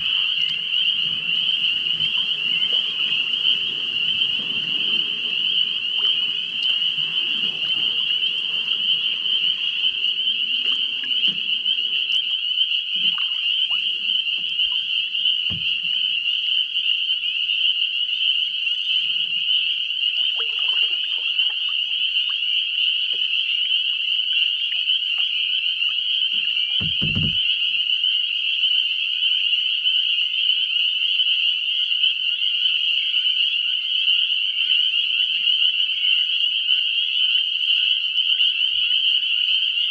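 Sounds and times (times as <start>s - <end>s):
frogs trilling: 0.0s - 39.9s
low knocks: 26.8s - 27.5s.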